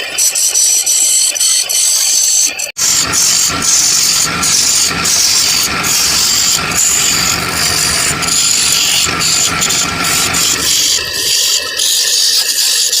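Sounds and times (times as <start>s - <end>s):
power tool working wood: 2.8s - 12.2s.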